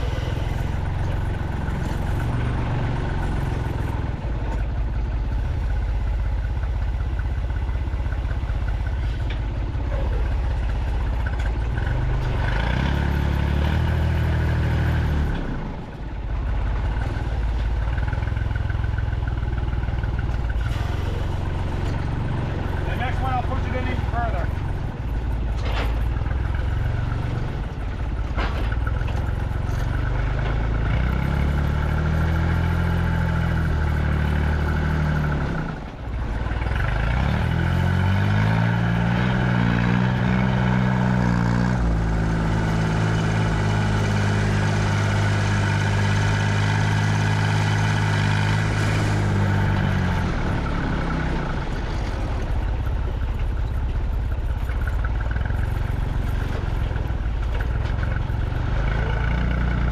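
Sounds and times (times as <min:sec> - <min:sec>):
truck engine pulling away: 0:00.0 - 0:59.9.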